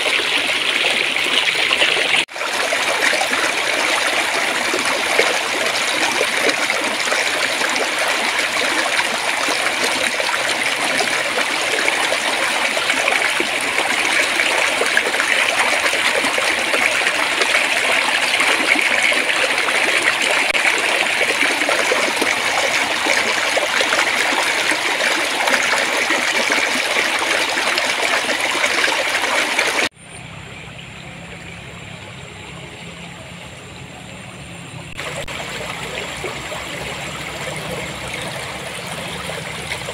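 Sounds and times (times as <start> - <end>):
shallow water babbling: 0.0 - 39.9
low hum: 29.9 - 39.9.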